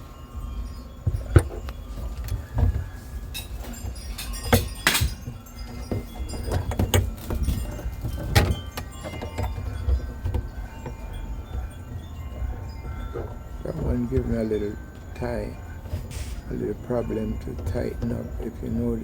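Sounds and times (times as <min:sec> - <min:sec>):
handling noise: 0:00.0 - 0:19.0
wrench clinking on metal nut: 0:03.4 - 0:10.1.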